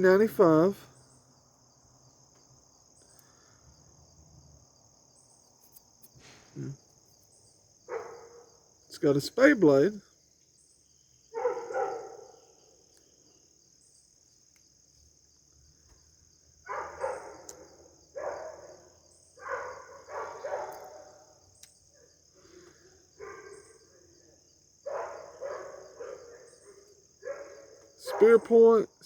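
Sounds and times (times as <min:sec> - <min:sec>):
crickets chirring: 0:00.0 - 0:29.0
short voice sounds: 0:06.5 - 0:06.8.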